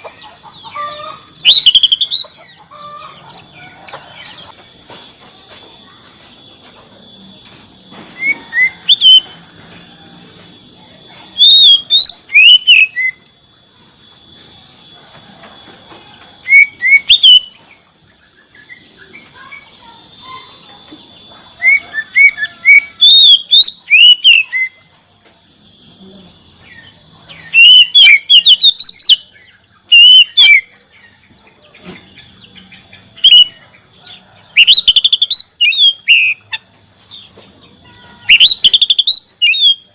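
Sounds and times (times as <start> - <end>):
bird singing whistled notes: 1.3 - 2.7, 8.0 - 9.4, 11.3 - 13.2, 16.4 - 19.5, 20.2 - 24.9, 25.8 - 30.7, 33.2 - 33.6, 34.5 - 36.4, 38.3 - 39.9.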